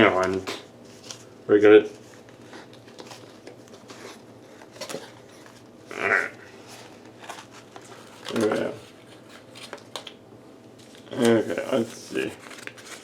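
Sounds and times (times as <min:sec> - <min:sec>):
packaging rustling and clicking: 0:06.7 - 0:10.2, 0:10.8 - 0:13.0.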